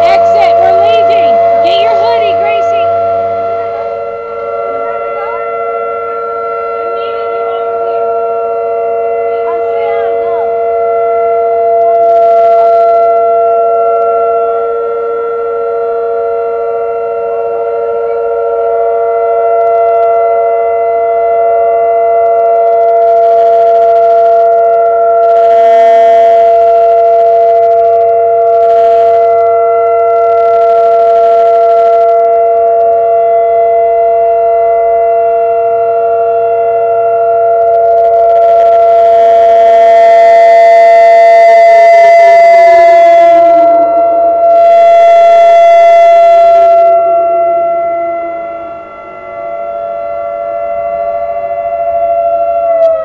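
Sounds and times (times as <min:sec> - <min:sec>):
people's voices: 0:00.0 - 0:04.0, 0:05.1 - 0:05.5, 0:07.0 - 0:08.1, 0:09.3 - 0:10.6
outdoor warning sirens: 0:00.0 - 0:53.0.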